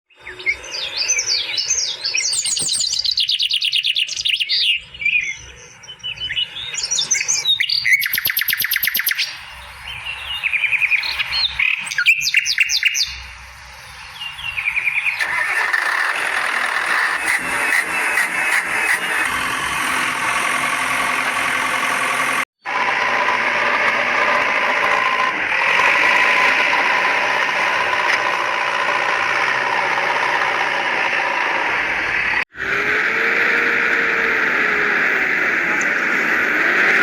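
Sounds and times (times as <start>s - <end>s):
birds singing and chirping: 0.1s - 16.1s
steady rough noise: 13.1s - 37.0s.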